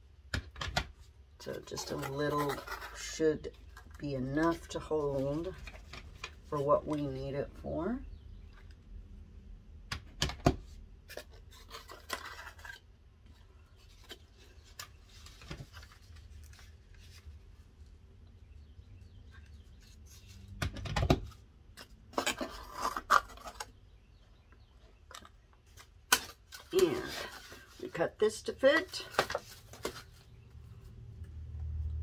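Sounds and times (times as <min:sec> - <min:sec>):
scraping and rubbing: 0:01.4 - 0:07.7, 0:11.1 - 0:17.7, 0:19.3 - 0:20.6, 0:21.2 - 0:23.8, 0:25.1 - 0:31.0.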